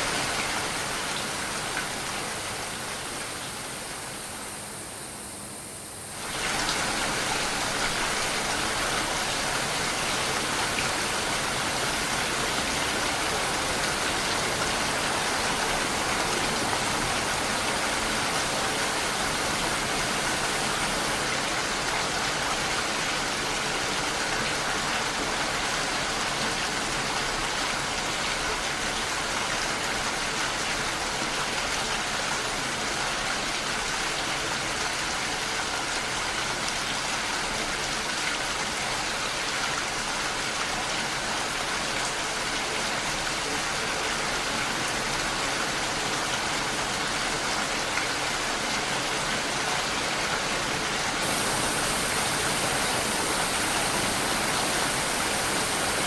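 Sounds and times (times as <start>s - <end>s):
heavy rain hiss: 0.0s - 21.6s, 51.2s - 56.0s.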